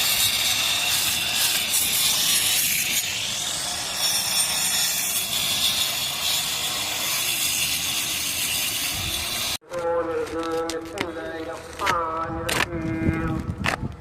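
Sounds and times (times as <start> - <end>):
power tool grinding wall: 0.0 - 9.6.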